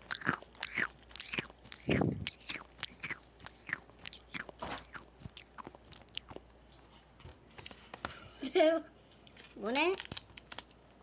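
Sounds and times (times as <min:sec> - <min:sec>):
hard candies crunched between teeth: 0:00.0 - 0:06.4, 0:10.0 - 0:10.8.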